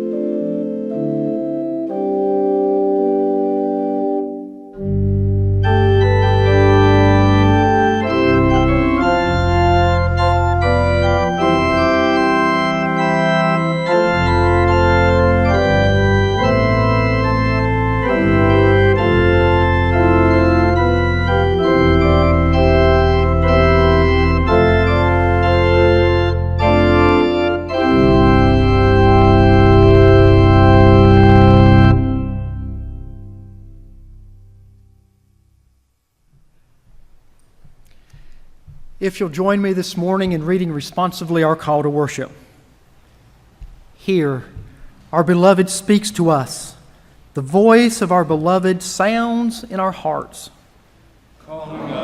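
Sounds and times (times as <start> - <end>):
deep organ pedal bass: 0.0 - 35.9, 38.6 - 41.9
organ playing sustained chords: 0.0 - 36.2, 37.2 - 43.2, 44.0 - 50.2.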